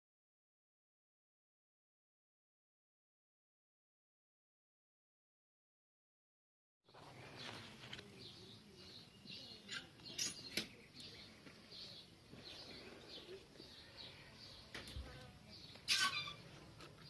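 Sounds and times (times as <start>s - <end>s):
small birds chirping: 6.9s - 17.0s.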